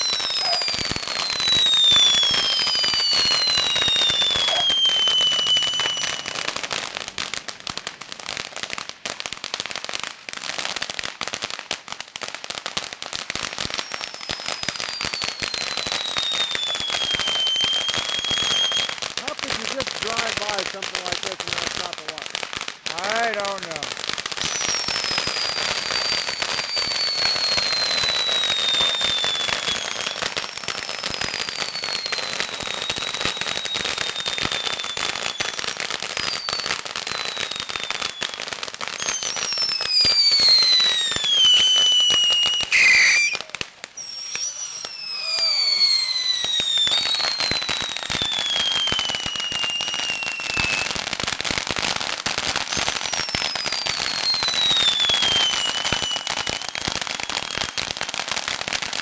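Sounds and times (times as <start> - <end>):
fireworks whistling: 0.0 - 10.8, 12.4 - 59.0
fireworks crackling: 0.0 - 59.0.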